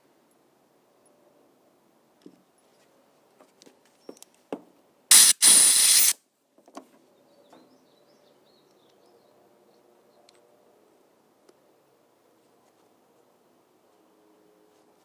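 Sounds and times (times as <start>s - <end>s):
hissing pressurized spray: 5.1s - 6.2s.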